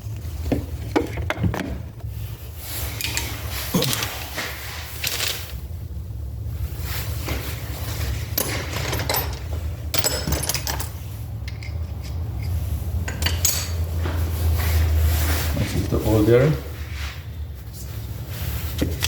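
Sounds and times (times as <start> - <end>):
steady low hum: 0.0 - 19.0
metal parts clinking: 8.4 - 13.9.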